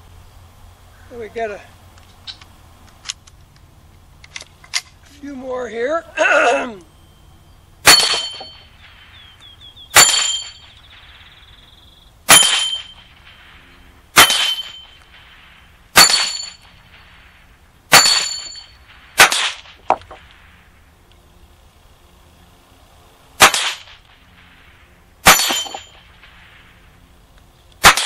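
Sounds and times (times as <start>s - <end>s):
steel targets ringing: 7.8s - 9.1s, 9.9s - 11.0s, 12.3s - 13.6s, 14.2s - 15.3s, 15.9s - 17.1s, 17.9s - 19.7s, 25.2s - 26.2s
rifle shots: 7.8s - 20.6s, 23.4s - 26.9s, 27.8s - 28.0s.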